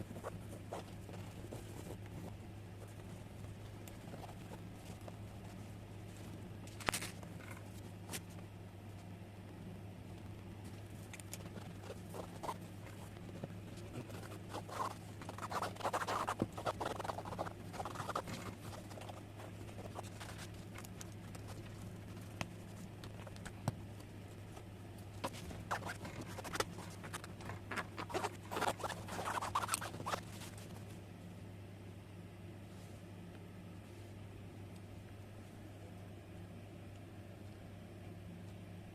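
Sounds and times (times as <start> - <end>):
scratchy rubbing and rustling: 0.0 - 8.4, 10.7 - 23.4, 25.2 - 30.9
steady low hum: 0.0 - 38.9.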